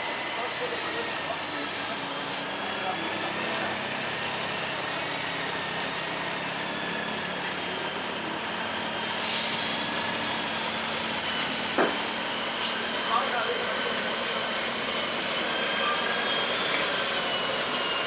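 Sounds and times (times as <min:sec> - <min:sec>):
air brakes hissing: 0:00.4 - 0:02.4, 0:09.0 - 0:15.5, 0:16.1 - 0:18.0.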